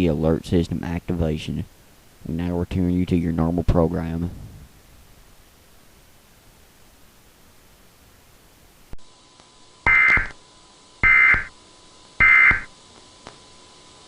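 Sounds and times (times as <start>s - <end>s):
buzzy digital data tones: 9.9s - 10.4s, 11.0s - 11.5s, 12.2s - 12.7s.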